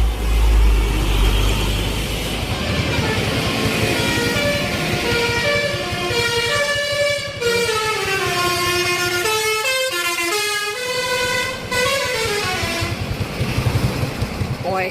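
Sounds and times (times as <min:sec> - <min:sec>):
vehicle engine running: 0:00.0 - 0:09.4, 0:11.1 - 0:14.9
musical bus air horn: 0:01.2 - 0:13.1.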